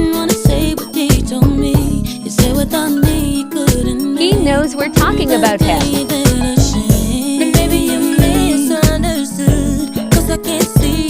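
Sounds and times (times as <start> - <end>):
r and b song with vocals: 0.0 - 11.0
steady drum beat: 4.3 - 11.0.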